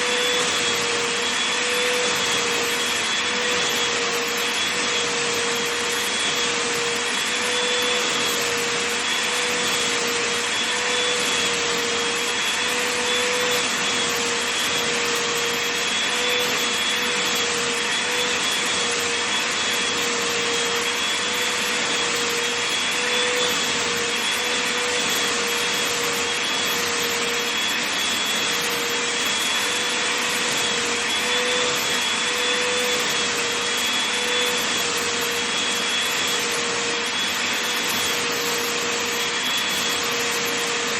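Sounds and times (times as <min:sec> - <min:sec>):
vacuum cleaner running: 0:00.0 - 0:40.9.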